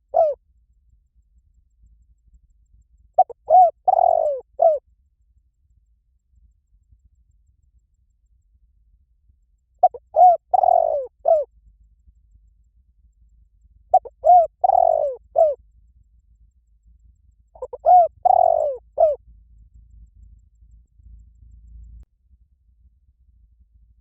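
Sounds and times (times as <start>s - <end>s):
dove cooing: 0.0s - 0.4s, 3.2s - 4.8s, 9.8s - 11.5s, 13.9s - 15.6s, 17.6s - 19.2s.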